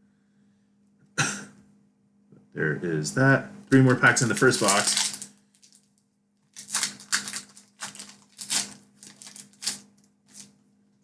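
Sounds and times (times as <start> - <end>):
foil wrapper crinkling: 3.7 - 10.6.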